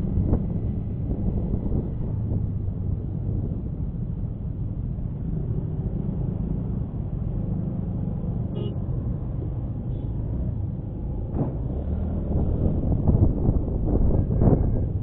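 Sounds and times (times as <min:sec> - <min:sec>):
road and wind noise: 0:00.0 - 0:15.0
vehicle horn toot: 0:08.6 - 0:08.8.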